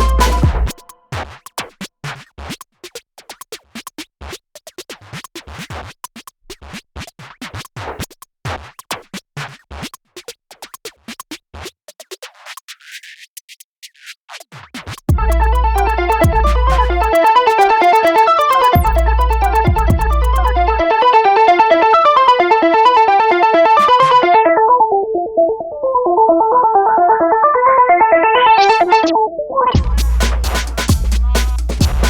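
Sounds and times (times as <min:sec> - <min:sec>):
electronic music: 0:00.0 - 0:01.0, 0:15.1 - 0:32.0.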